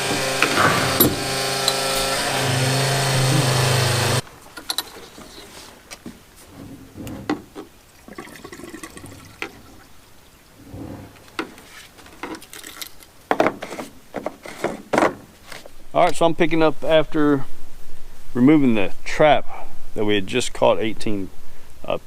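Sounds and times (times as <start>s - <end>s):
handling knocks and clicks: 0.0s - 2.2s, 4.5s - 7.8s, 11.2s - 15.7s.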